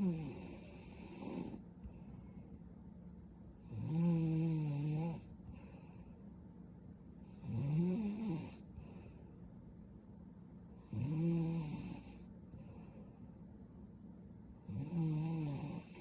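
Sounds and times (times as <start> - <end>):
woman snoring: 0.0 - 1.6, 3.7 - 5.3, 7.4 - 8.6, 10.8 - 12.2, 14.7 - 16.0.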